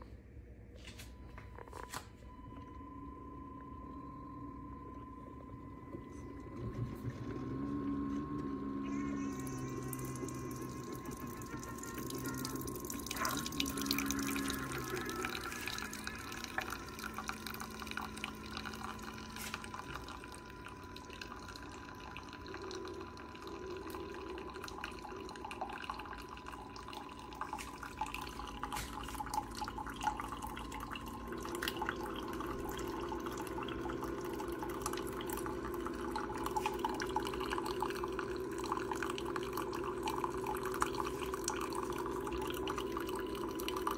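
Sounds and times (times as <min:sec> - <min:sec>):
coffee maker thin tone: 0:00.9 - 0:43.9
water dripping into a cup: 0:08.8 - 0:43.9.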